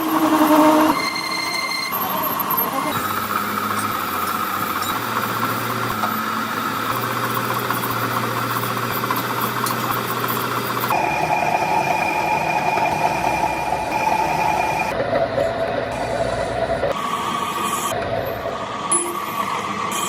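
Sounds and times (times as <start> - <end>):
workshop machinery whine: 0.0 - 20.0.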